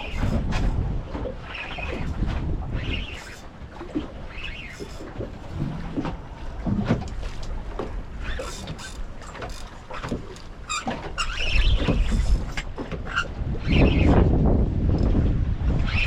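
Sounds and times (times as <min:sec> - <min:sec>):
wind buffeting microphone: 0:00.0 - 0:16.0
high squeaks: 0:08.2 - 0:12.5.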